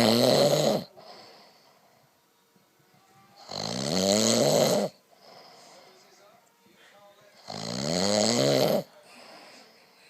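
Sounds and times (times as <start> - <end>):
man snoring: 0.0 - 1.3, 3.4 - 5.5, 7.4 - 8.9
soft breath out: 5.1 - 7.1, 9.0 - 10.0.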